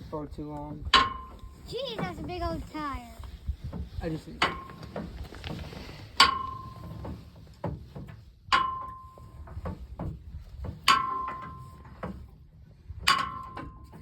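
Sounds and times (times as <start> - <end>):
sharp metal clanks: 10.8 - 11.8, 13.1 - 14.0.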